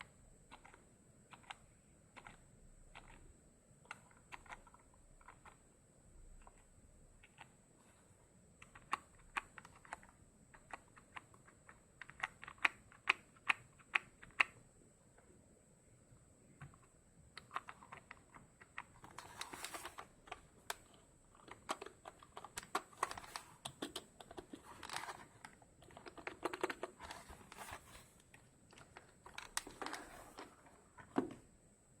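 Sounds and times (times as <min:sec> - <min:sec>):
keyboard keys typing: 0:00.5 - 0:03.2, 0:03.9 - 0:05.6, 0:17.4 - 0:30.7.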